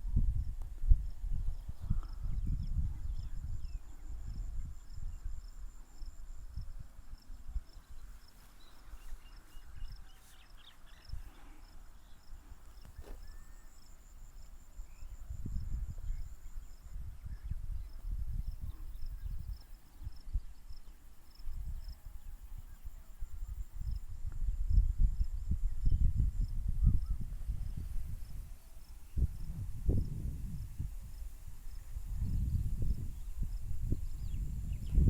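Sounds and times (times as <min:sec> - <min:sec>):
faint scattered bird chirps: 0:07.6 - 0:24.7.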